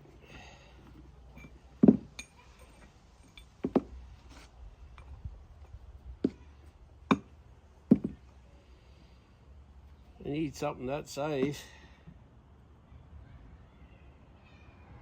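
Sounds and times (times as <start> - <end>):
metal tools clinking and knocking: 0.8 - 5.1.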